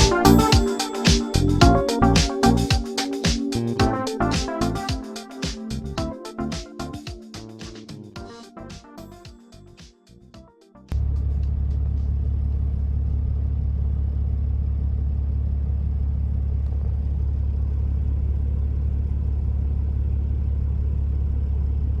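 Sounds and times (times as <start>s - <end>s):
car engine rumbling: 10.9s - 22.0s.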